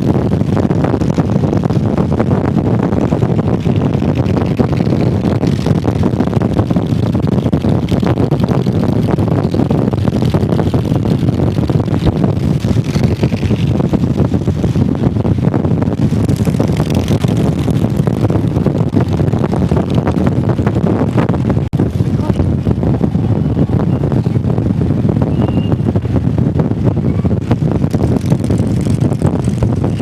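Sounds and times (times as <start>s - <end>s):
motorcycle engine running: 0.0s - 30.0s.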